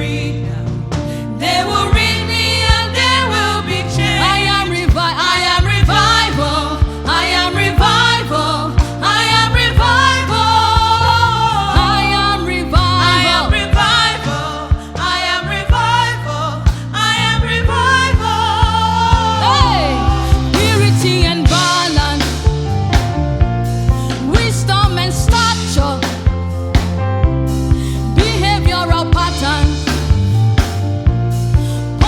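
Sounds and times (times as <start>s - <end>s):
gospel choir singing: 0.0s - 22.7s
bass notes: 0.0s - 32.0s
drum hits: 17.6s - 27.4s.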